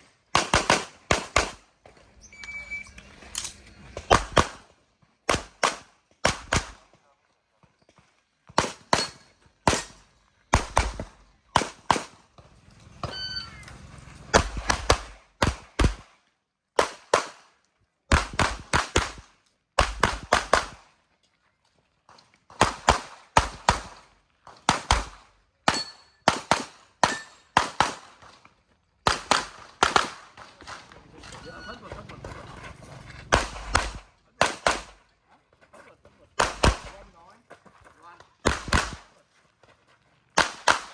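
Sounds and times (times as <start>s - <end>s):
pistol firing rapidly: 0.3s - 1.6s, 5.3s - 6.8s, 9.7s - 12.2s, 14.3s - 16.1s, 18.1s - 19.2s, 19.8s - 20.8s, 22.6s - 24.0s, 24.7s - 28.2s, 29.0s - 30.9s, 33.3s - 35.0s, 36.4s - 37.1s, 38.4s - 39.1s, 40.4s - 40.9s
short ringing tone: 2.2s - 3.2s, 13.0s - 14.1s, 31.4s - 32.0s.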